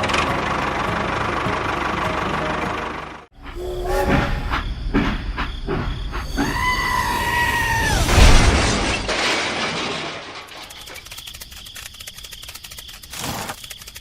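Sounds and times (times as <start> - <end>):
held tone: 3.4 - 4.7.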